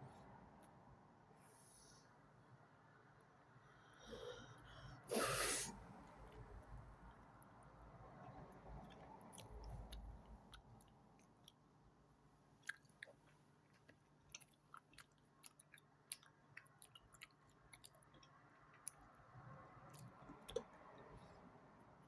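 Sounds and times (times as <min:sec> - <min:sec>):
person chewing gum: 0:08.2 - 0:11.7, 0:12.6 - 0:19.2, 0:19.8 - 0:21.4.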